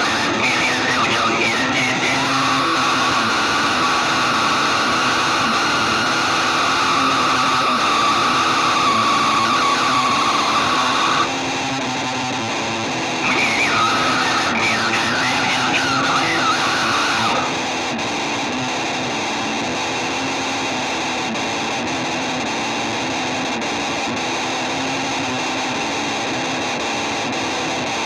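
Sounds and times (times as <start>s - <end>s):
wavering upper guitar line: 0.0s - 11.3s, 13.1s - 17.7s
distorted electric guitar rock music: 0.0s - 28.0s.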